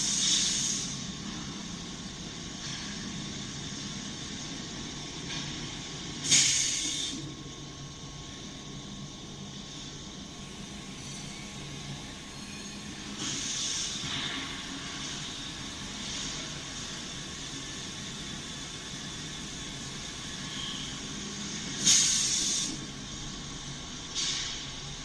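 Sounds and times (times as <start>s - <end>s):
pneumatic air hissing: 0.0s - 1.1s, 6.2s - 7.3s, 13.1s - 15.3s, 21.7s - 22.9s, 24.1s - 24.8s
steady low hum: 0.0s - 25.0s.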